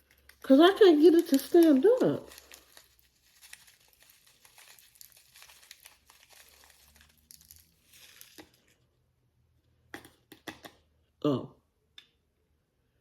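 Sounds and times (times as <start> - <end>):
plastic packaging crinkling: 0.0 - 8.9.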